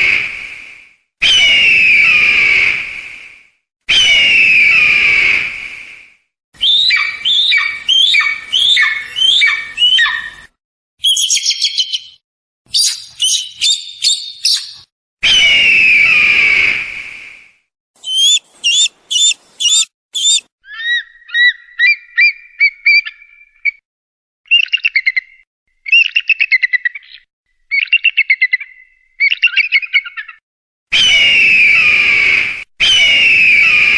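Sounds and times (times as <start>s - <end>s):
eagle calls: 6.6s - 10.4s, 11.0s - 14.8s, 18.0s - 23.2s
eagle harsh scream: 18.0s - 20.4s
eagle trill: 18.0s - 20.4s.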